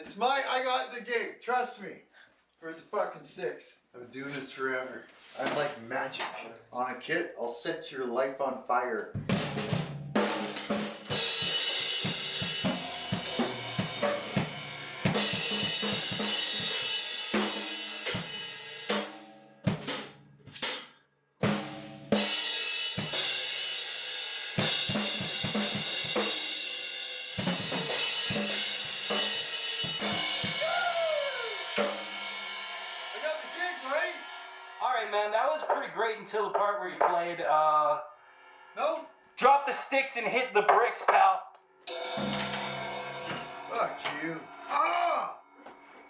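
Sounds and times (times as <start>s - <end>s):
drum kit fills: 9.1s - 34.8s, 41.9s - 46.0s
crashing cymbals: 10.2s - 35.4s, 41.9s - 46.0s.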